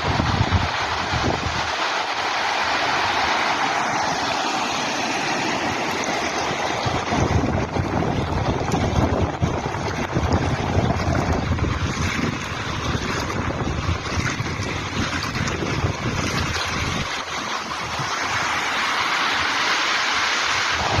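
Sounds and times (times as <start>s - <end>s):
wind buffeting microphone: 0.0s - 1.8s, 5.5s - 18.7s, 20.6s - 21.0s
sea waves breaking: 0.0s - 21.0s.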